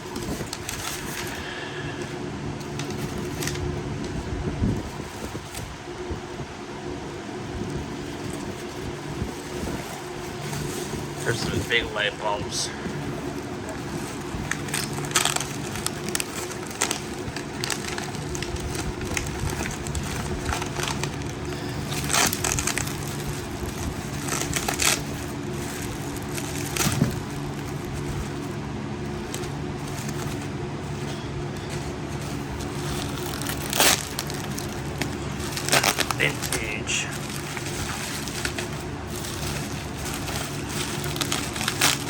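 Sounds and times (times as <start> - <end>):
packing material rustling: 0.0 - 6.4, 7.0 - 42.0
steady low hum: 0.0 - 42.0.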